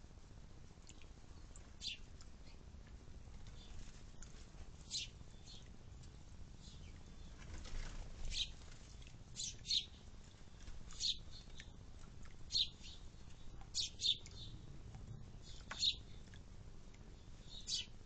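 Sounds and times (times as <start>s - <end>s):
sparrows chirping: 1.4s - 2.6s, 3.4s - 8.6s, 9.4s - 16.4s, 17.1s - 18.0s.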